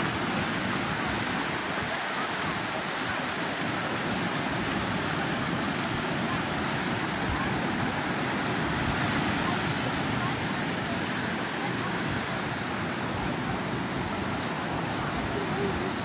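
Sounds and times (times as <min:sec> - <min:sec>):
ocean surf on beach: 0:00.0 - 0:16.0.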